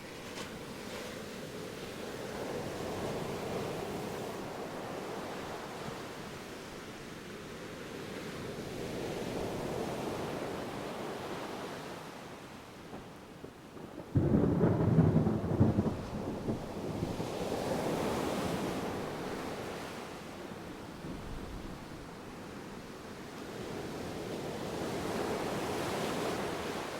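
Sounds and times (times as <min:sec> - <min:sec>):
ocean surf: 0:00.0 - 0:13.3, 0:14.2 - 0:26.9
distant thunder: 0:13.4 - 0:17.2.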